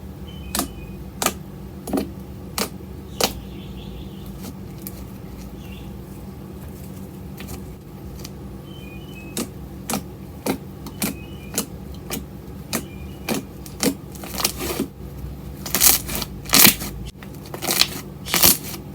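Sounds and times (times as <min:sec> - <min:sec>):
steady low hum: 0:00.0 - 0:18.9
slime squishing and popping: 0:15.7 - 0:16.9, 0:17.6 - 0:18.8.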